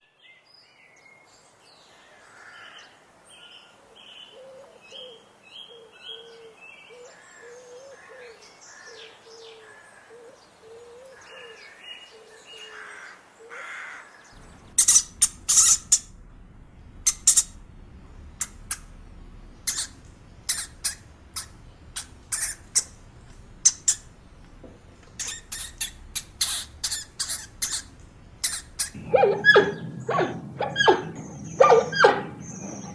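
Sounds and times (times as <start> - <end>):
sharp high squeaks: 14.8 - 16.1, 25.1 - 32.9
birds chirping: 19.4 - 32.9
birds calling low notes: 25.2 - 32.9.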